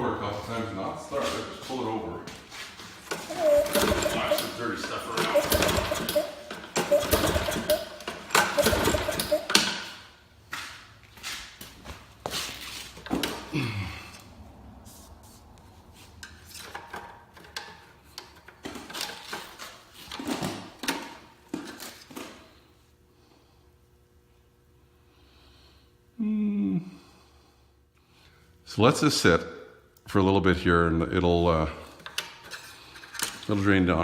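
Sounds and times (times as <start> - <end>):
lawn mower engine turning over: 3.0 - 10.0
recoil pull-starter: 3.1 - 9.8
knocks and clatter: 3.1 - 9.9.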